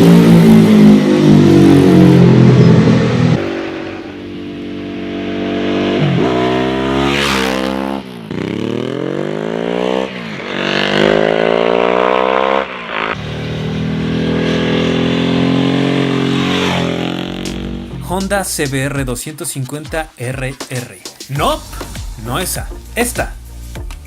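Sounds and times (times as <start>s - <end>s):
motorcycle engine accelerating: 0.0s - 18.0s.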